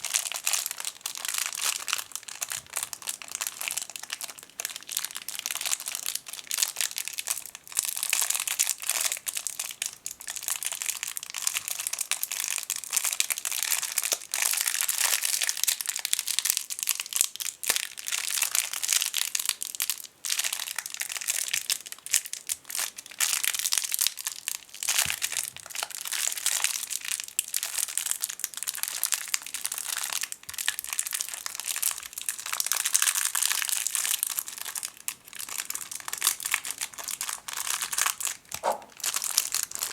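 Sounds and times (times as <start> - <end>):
plastic bag crinkling: 32.6 - 39.9.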